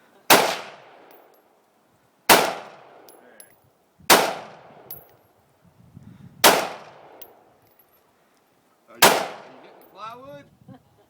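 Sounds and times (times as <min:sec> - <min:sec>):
rifle shots echoing: 0:00.3 - 0:01.2, 0:02.3 - 0:03.2, 0:04.1 - 0:04.9, 0:06.4 - 0:07.4, 0:09.0 - 0:09.9.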